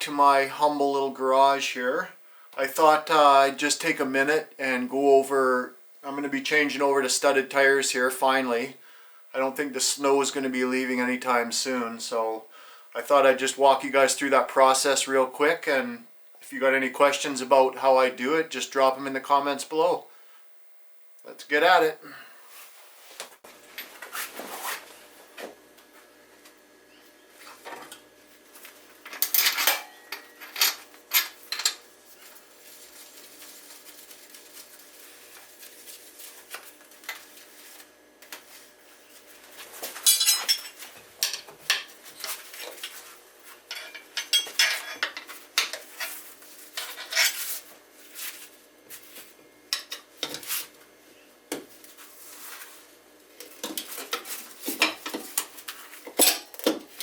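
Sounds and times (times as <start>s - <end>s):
faint steady hum: 0.0s - 23.0s
metal tools clinking and clattering: 29.1s - 31.8s, 40.0s - 41.4s, 43.7s - 45.3s.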